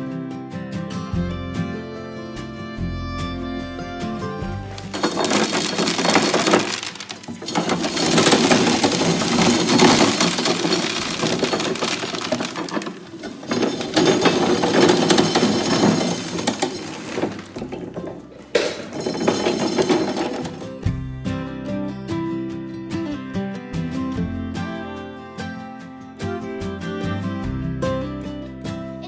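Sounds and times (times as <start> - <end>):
hammer mill grinding corn: 4.4 - 21.1.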